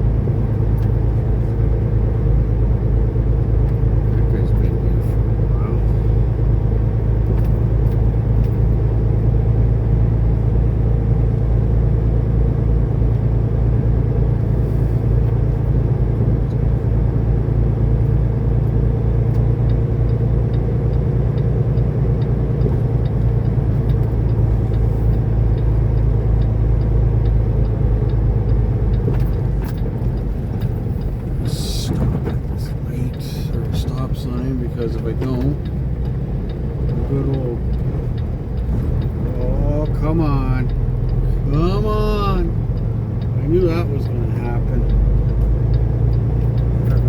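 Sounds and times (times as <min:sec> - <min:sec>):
truck diesel engine droning: 0:00.0 - 0:47.0
light ticks: 0:03.6 - 0:04.2, 0:18.0 - 0:47.0.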